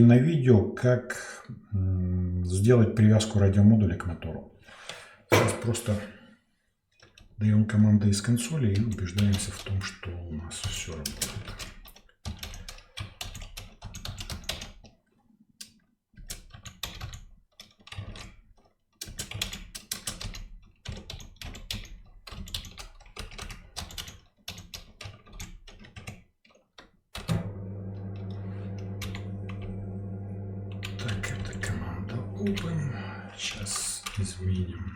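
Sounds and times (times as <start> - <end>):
typing on computer keyboard: 8.7 - 9.9, 10.6 - 15.0, 15.6 - 27.3
roller blind motor humming: 27.4 - 32.6.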